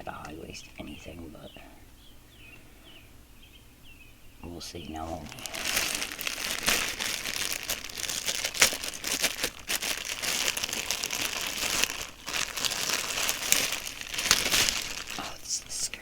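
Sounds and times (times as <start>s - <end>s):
packaging crinkling and rustling: 5.0s - 15.8s.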